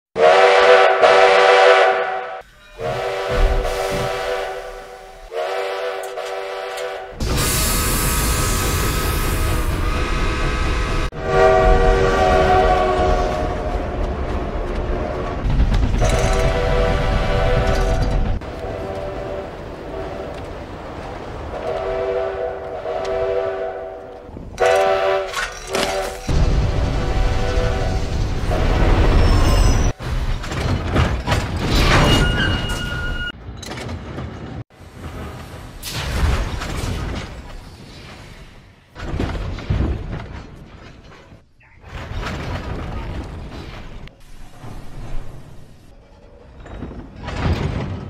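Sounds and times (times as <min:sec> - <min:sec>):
steam locomotive chime whistle: 0:00.2 - 0:07.1, 0:32.0 - 0:33.4
steam locomotive whistle: 0:00.2 - 0:13.8, 0:16.0 - 0:20.2, 0:21.6 - 0:26.2, 0:27.1 - 0:29.9.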